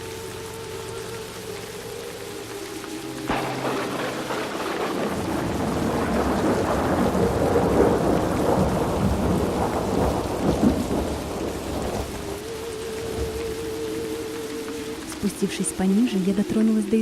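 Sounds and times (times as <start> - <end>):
rain falling: 0.0 - 17.0
thunder rumbling: 3.0 - 15.7.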